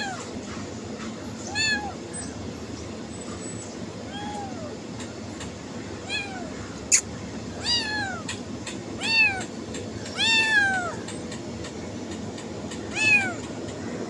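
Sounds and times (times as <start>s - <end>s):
cat meowing: 0.0s - 0.2s, 1.4s - 2.0s, 4.1s - 4.8s, 6.0s - 7.0s, 7.6s - 8.4s, 9.0s - 9.5s, 10.1s - 11.0s, 12.9s - 13.5s.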